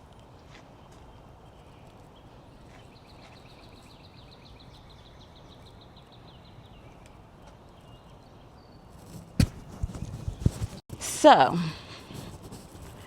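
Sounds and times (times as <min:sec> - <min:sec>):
songbird singing: 0:00.2 - 0:09.3.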